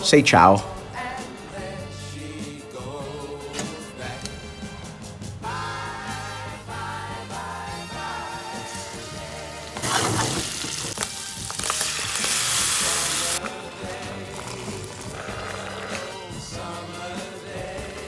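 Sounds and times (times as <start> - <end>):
pop song with singing: 0.3 - 10.4, 12.6 - 18.0
frying pan sizzling: 8.2 - 17.1.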